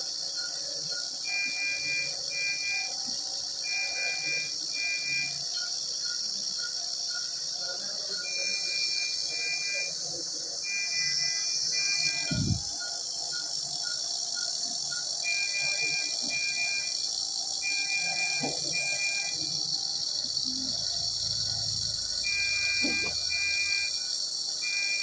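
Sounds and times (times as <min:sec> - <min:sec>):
electronic alarm beeping: 0:01.3 - 0:03.0, 0:03.7 - 0:05.6, 0:08.2 - 0:10.0, 0:10.6 - 0:25.0.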